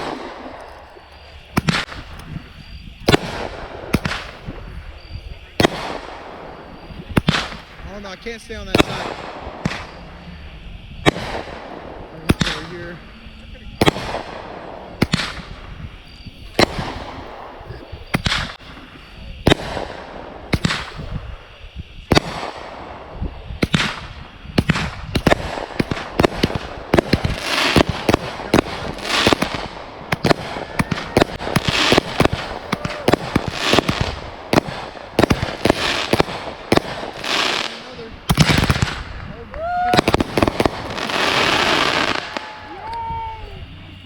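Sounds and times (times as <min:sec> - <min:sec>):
fireworks bangs: 0:00.0 - 0:44.0
fireworks hissing crackle: 0:00.0 - 0:44.0.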